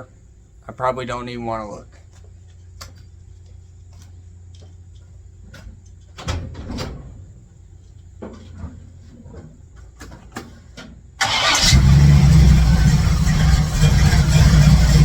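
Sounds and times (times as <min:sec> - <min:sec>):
engine cranking and starting: 0:11.2 - 0:15.0
loud deep engine running: 0:11.2 - 0:15.0.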